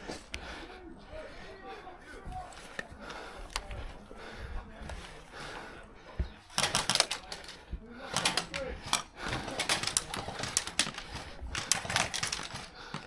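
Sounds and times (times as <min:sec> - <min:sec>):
airsoft gun firing bursts: 0:06.5 - 0:13.0.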